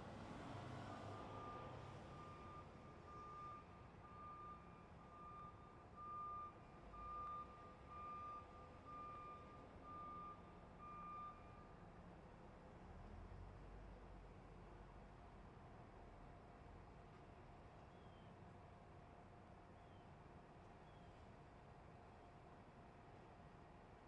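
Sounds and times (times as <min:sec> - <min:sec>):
truck reversing alarm beeping: 0:01.0 - 0:11.8.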